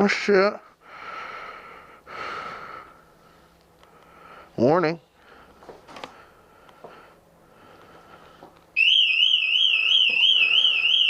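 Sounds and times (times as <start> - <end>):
warbling bike alarm siren: 8.8 - 11.0.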